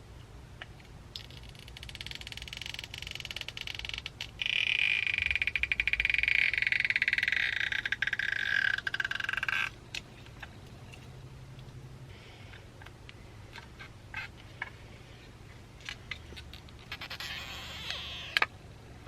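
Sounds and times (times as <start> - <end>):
adhesive strips creaking: 1.2 - 9.8, 15.8 - 18.5.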